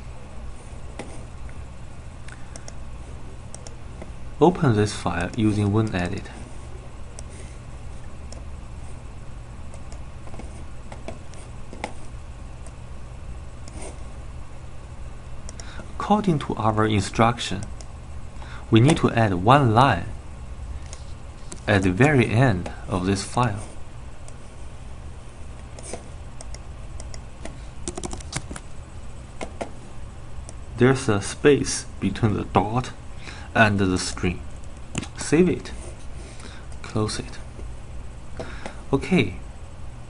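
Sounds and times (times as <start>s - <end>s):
low electrical hum: 0.0s - 40.0s
computer mouse clicks: 2.2s - 2.8s, 3.5s - 3.8s, 25.6s - 28.6s, 34.6s - 35.2s
keyboard typing: 27.8s - 28.6s.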